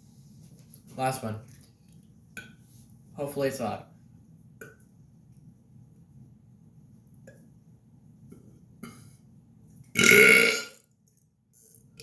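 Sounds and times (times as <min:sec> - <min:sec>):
man burping loudly: 0:10.0 - 0:10.8.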